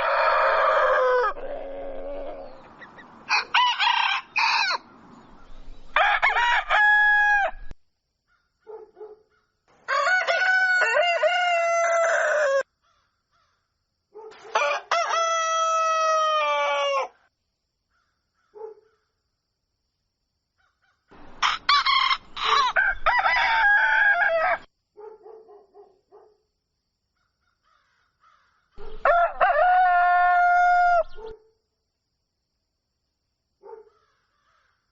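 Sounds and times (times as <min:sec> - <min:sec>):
roosters crowing: 0:00.0 - 0:07.7, 0:09.8 - 0:12.7, 0:14.4 - 0:17.2, 0:21.1 - 0:24.7, 0:28.8 - 0:31.3
chicken clucks: 0:01.1 - 0:03.2.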